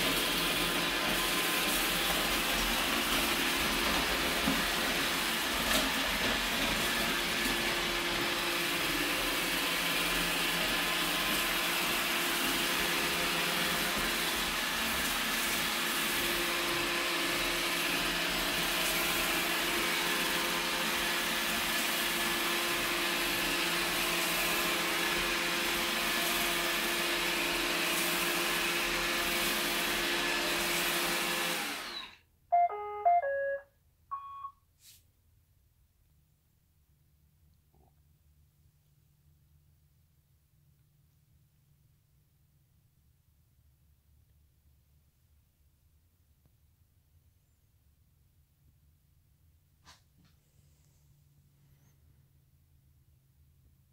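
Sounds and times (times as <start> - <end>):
robot vacuum running: 0.0 - 32.2
electronic beep tones: 32.5 - 34.5.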